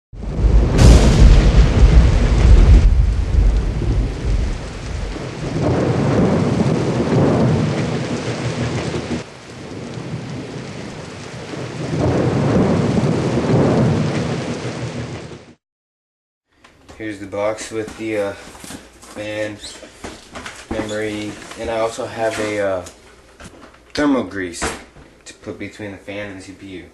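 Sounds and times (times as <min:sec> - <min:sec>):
rain: 0:00.2 - 0:15.6
rolling thunder: 0:00.2 - 0:15.6.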